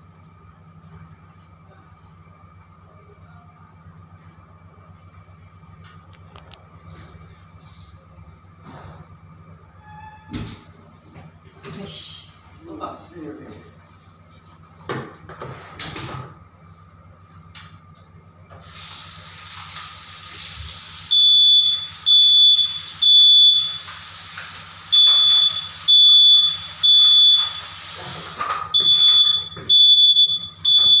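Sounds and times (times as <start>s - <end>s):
hiss: 18.5s - 28.5s
fire alarm beeping: 21.0s - 24.1s, 24.8s - 28.0s, 28.7s - 31.0s.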